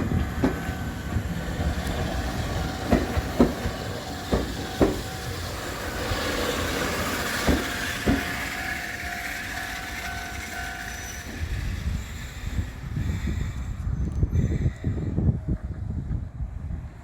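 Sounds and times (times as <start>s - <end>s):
train wheels clacking over rail joints: 0.0s - 13.2s
train rumble: 0.0s - 17.0s.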